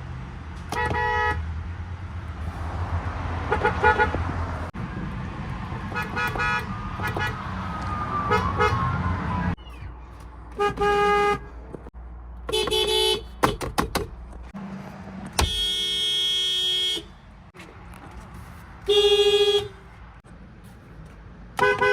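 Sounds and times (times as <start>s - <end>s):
car horns honking: 0.7s - 1.5s, 3.4s - 4.5s, 5.8s - 7.6s, 9.6s - 14.0s, 15.2s - 17.3s, 18.8s - 20.0s, 21.6s - 21.9s.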